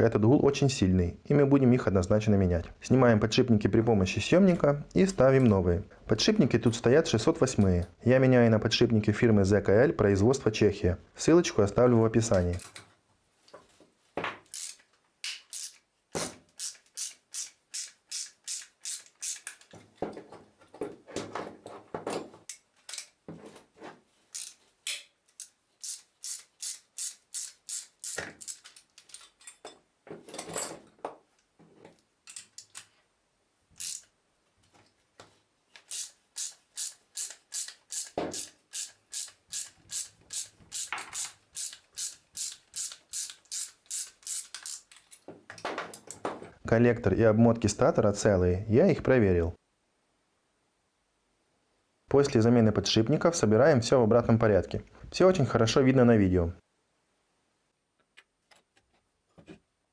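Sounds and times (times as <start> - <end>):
hand tools clicking on metal: 24.3 - 29.8, 35.8 - 46.2.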